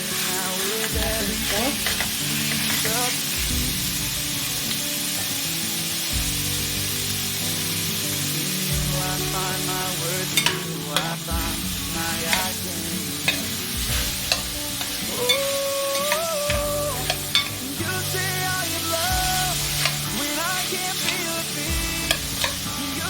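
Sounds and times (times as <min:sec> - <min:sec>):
pork sizzling in hot oil: 0:00.0 - 0:23.0
utensil clicking against pan: 0:12.3 - 0:12.6, 0:13.2 - 0:17.6, 0:19.6 - 0:22.7.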